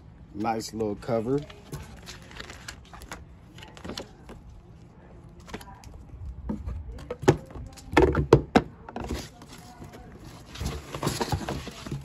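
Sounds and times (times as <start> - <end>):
hands handling parts and packaging: 1.2 - 4.6, 8.9 - 12.0.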